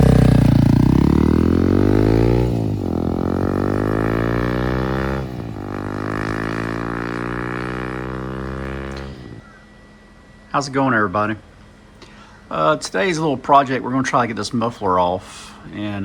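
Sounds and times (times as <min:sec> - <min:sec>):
motorcycle engine accelerating: 0:00.0 - 0:09.7.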